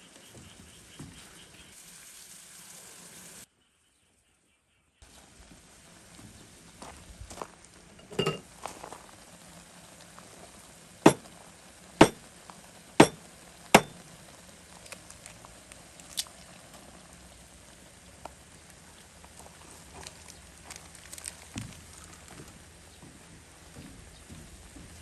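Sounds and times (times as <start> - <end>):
faint steady hiss: 5.0 - 25.0
cookware and utensils clinking: 8.0 - 8.5, 13.0 - 13.2.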